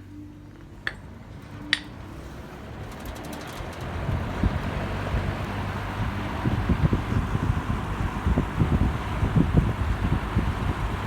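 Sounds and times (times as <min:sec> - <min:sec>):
box fan motor hum and air rush: 0:00.0 - 0:11.0.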